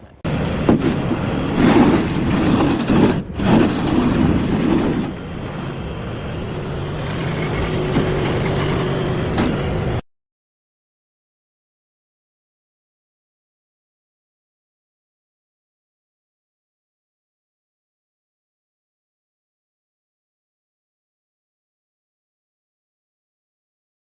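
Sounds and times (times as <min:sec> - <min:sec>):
heavy machine engine running: 0:00.0 - 0:10.0.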